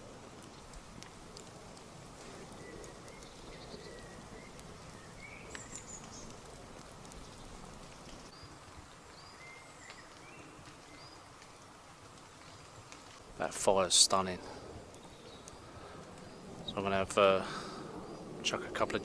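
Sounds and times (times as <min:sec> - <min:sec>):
campfire crackling and popping: 0:00.0 - 0:19.0
small birds whistling calls: 0:02.3 - 0:06.5, 0:07.1 - 0:11.3, 0:14.9 - 0:16.8.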